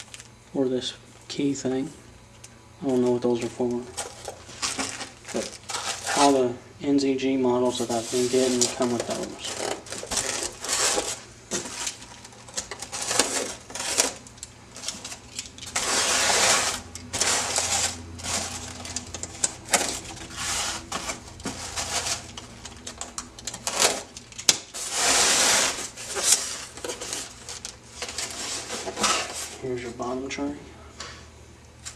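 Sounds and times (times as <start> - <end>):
plastic packaging rustling: 0.0 - 0.4, 2.8 - 6.5, 7.7 - 29.7
parts clicking and clattering: 8.5 - 24.9, 26.0 - 29.5.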